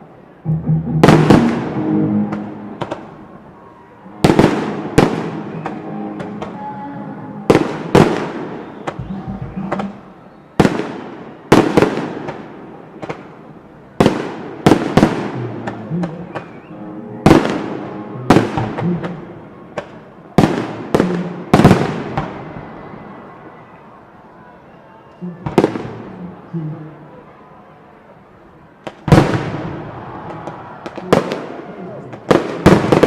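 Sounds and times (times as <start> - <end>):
fireworks bursting with bangs: 1.0 - 3.2, 4.2 - 6.6, 7.5 - 16.6, 17.2 - 22.8, 25.4 - 26.1, 28.8 - 33.0.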